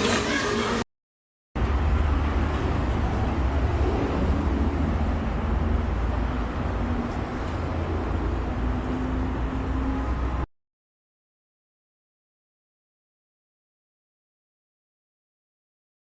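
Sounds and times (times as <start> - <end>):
vehicle rumble with hiss: 1.6 - 10.5.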